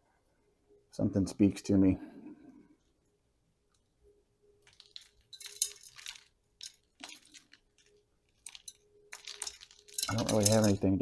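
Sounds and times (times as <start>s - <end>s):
metallic clinks and scrapes: 4.6s - 11.0s.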